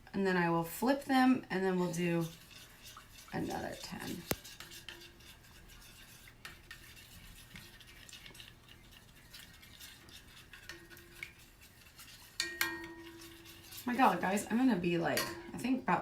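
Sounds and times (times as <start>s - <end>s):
utensils and dishes clattering: 12.1s - 13.9s.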